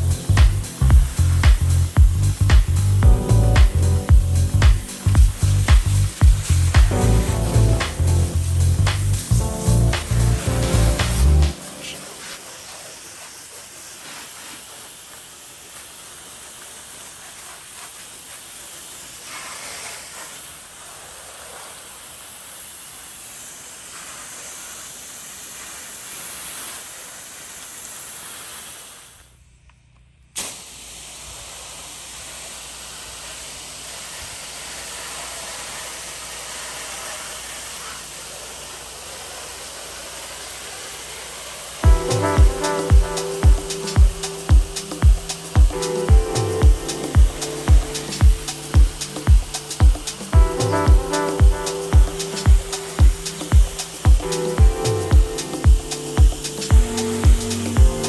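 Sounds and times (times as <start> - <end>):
low steady hum: 0.0 - 12.1
hissing water spray: 0.0 - 29.4, 30.4 - 58.0.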